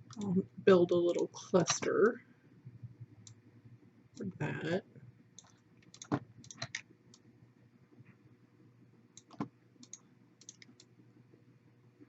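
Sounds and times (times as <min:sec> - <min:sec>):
computer mouse clicks: 0:05.4 - 0:07.3, 0:09.2 - 0:10.9.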